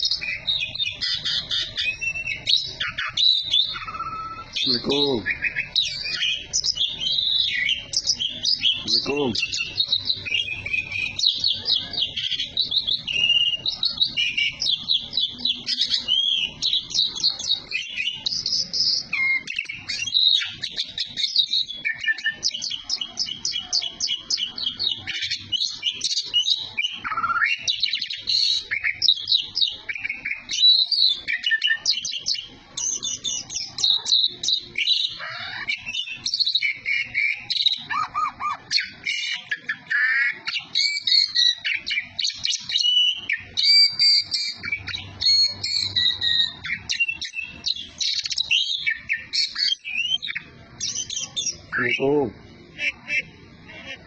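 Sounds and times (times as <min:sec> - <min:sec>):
starling singing chirps and trills: 0:00.0 - 0:54.0.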